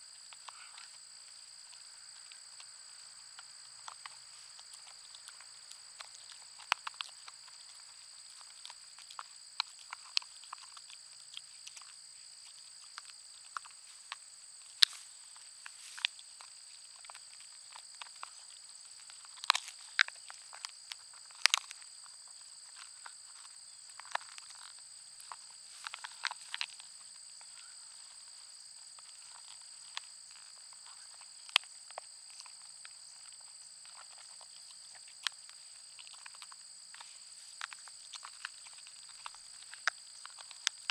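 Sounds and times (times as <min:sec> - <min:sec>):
dog chewing a bone: 0:03.4 - 0:12.0.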